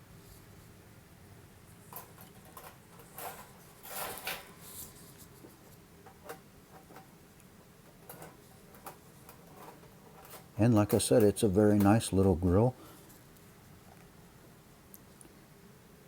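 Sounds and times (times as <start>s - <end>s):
grill grate clicking and rattling: 1.8s - 12.7s.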